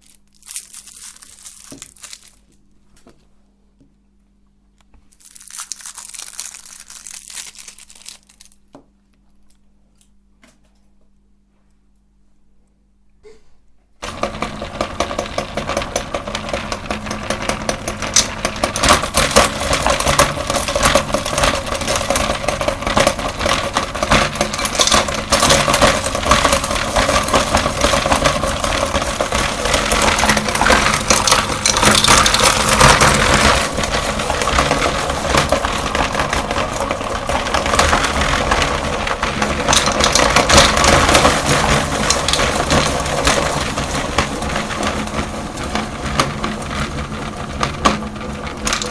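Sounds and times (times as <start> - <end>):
candy crackling and crunching: 0.0 - 2.8, 5.0 - 9.7, 14.4 - 48.9
meat grinder motor running: 14.0 - 48.9.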